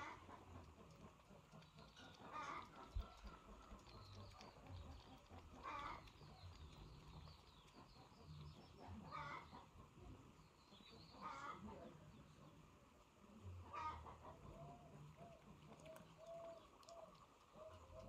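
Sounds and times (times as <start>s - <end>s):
faint animal calls: 0.0s - 6.6s, 11.0s - 11.9s, 13.6s - 18.0s.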